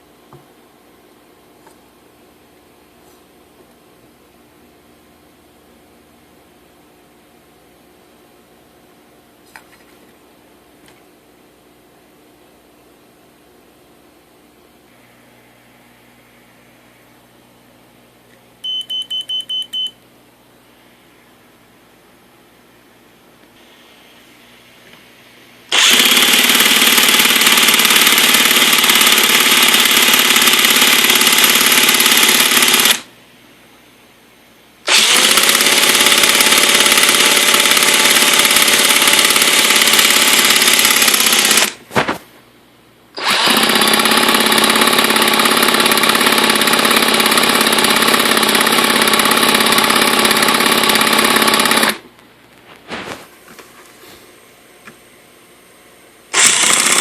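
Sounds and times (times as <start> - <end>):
electric starter whining: 25.7 - 33.1, 34.9 - 41.8, 43.2 - 52.0, 56.3 - 57.0.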